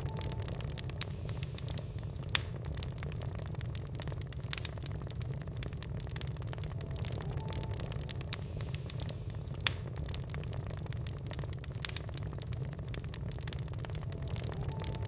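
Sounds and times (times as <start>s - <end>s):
low fire rumble: 0.0s - 15.0s
wood fire crackling: 0.0s - 15.0s.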